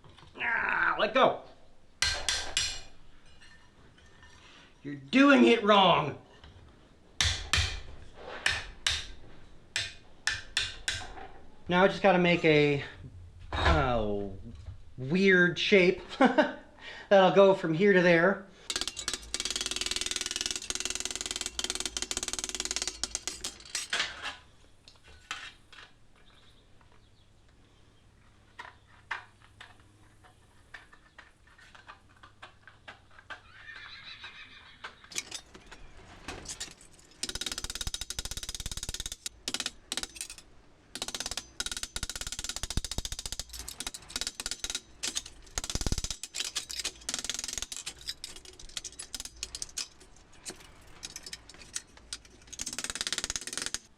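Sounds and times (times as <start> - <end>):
clicks and knocks: 35.1 - 53.9.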